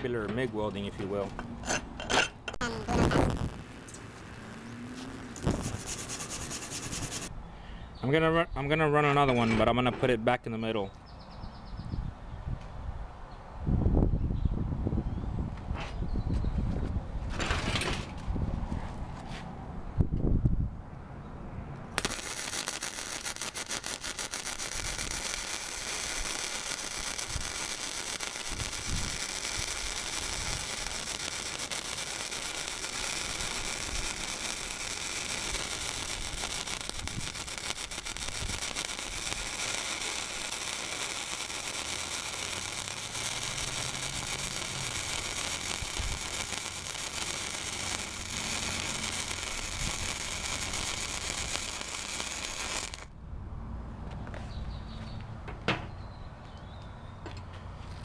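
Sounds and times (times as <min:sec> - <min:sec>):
welding arc crackling: 0:02.6 - 0:07.3, 0:22.0 - 0:53.1.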